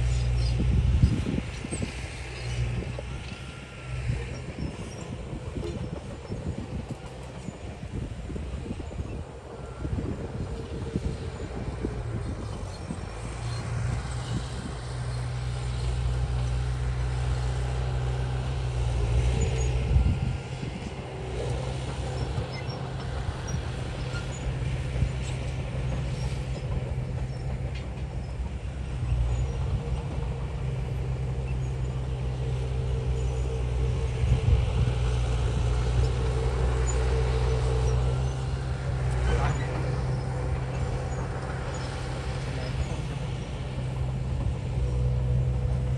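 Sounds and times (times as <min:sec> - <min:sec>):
diesel engine under load: 0:00.0 - 0:45.9.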